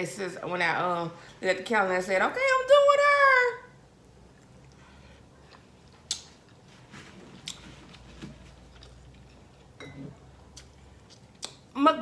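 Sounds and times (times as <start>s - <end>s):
mouth clicks and smacks: 5.9s - 6.6s, 10.5s - 11.7s.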